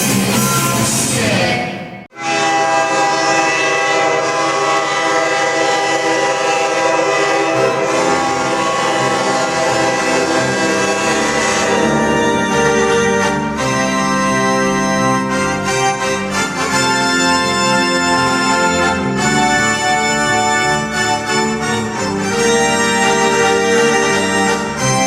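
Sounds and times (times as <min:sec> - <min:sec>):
organ chords: 0:00.0 - 0:25.0.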